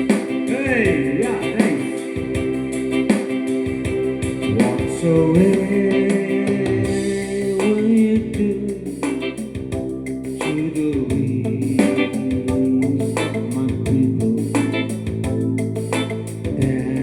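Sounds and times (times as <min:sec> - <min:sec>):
person singing gliding melody: 0:00.0 - 0:09.0
regular beat: 0:00.0 - 0:17.0.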